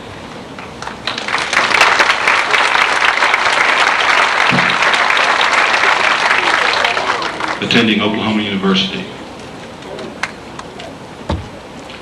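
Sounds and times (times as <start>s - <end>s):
audience applauding: 0.6s - 7.8s.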